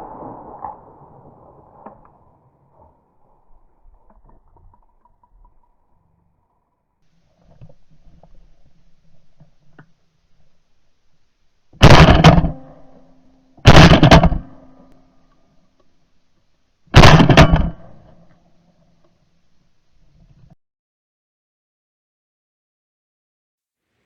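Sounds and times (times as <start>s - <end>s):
shotgun shots echoing: 11.8s - 13.0s, 13.6s - 14.9s, 16.9s - 18.0s.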